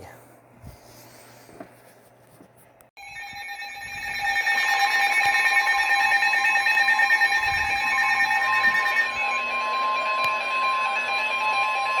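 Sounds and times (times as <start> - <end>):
weather radio alarm tones: 3.5 - 12.0.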